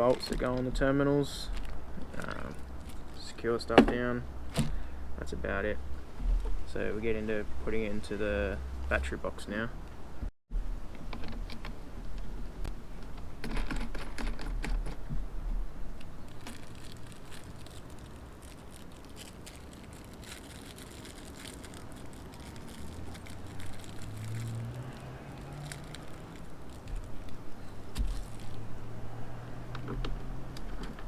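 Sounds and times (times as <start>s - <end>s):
hands handling plastic packaging: 0.0s - 3.2s, 15.9s - 28.8s.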